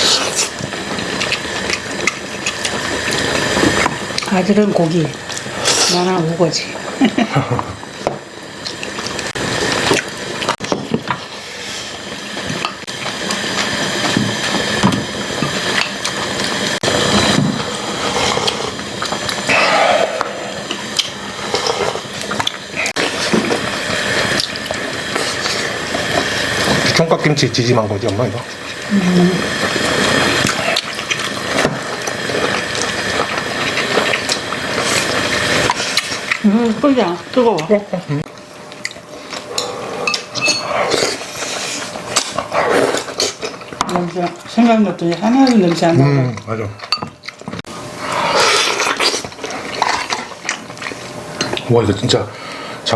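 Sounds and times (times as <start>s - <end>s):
wet slurping of broth: 17.6s - 22.4s.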